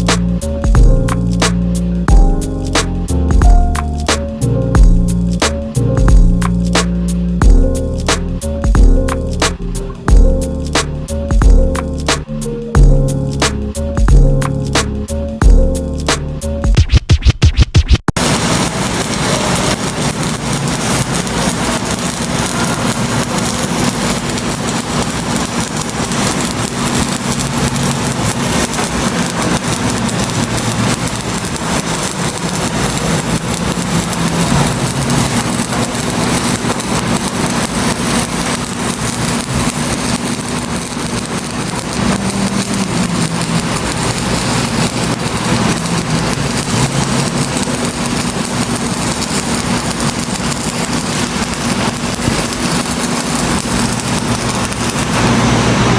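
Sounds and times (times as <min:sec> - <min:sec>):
machine crackle over low hum: 0:18.2 - 0:55.9.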